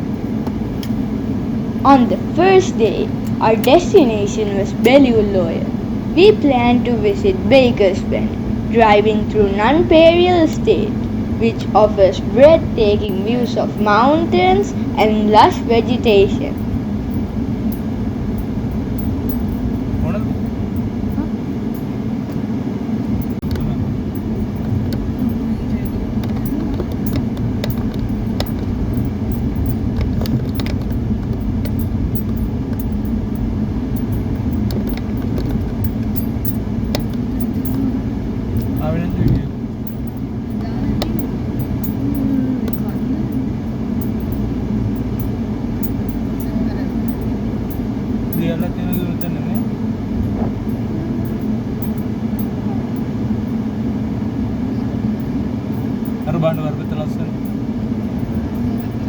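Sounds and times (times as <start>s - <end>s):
car engine and tyres rumbling: 0.0s - 59.0s
small clinks and rattles: 12.4s - 22.0s, 23.2s - 53.6s, 55.2s - 59.0s.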